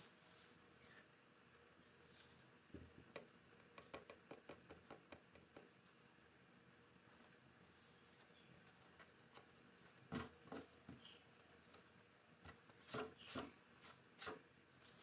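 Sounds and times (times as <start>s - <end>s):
sharp knocks and taps: 2.8s - 5.7s.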